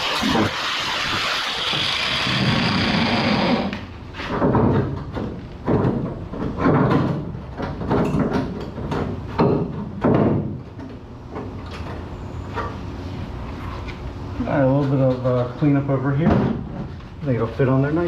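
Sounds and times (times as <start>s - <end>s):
quiet handling noise: 4.2s - 18.0s.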